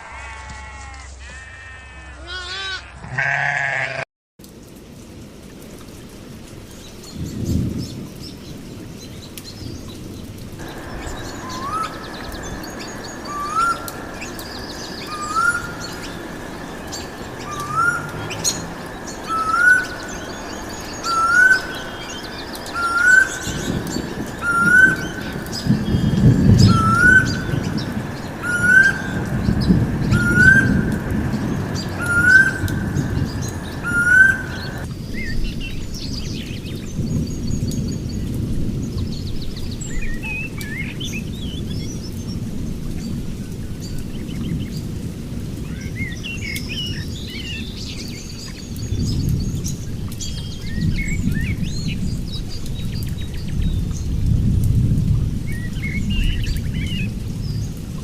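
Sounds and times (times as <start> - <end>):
bird whistling rising note: 10.6 - 34.8
faint bird chirping: 10.6 - 34.8
low rumble: 10.6 - 35.6.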